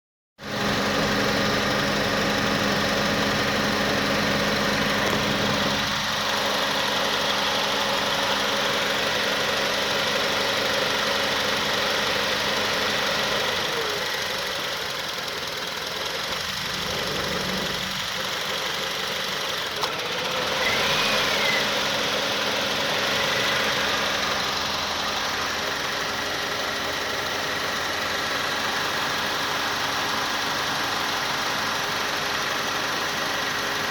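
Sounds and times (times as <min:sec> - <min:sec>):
car engine idling roughly: 0:00.4 - 0:33.9.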